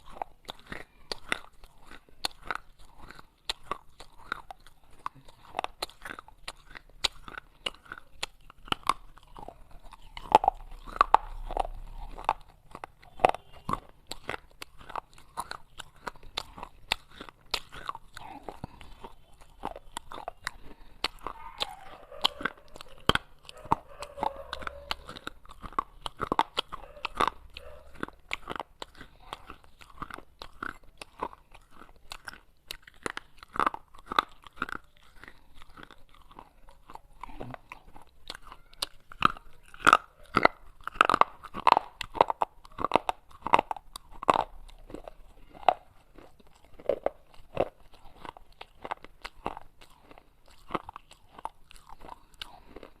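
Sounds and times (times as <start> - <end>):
crunching of clay being chewed: 0.0 - 53.0.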